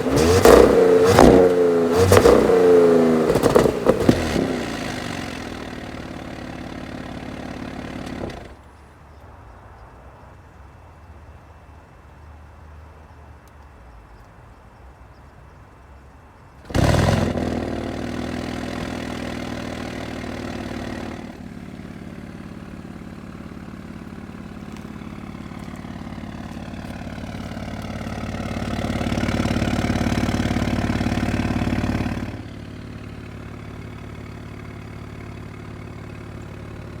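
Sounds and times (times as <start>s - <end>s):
car engine starting and idling: 0.0s - 8.7s, 16.6s - 37.0s.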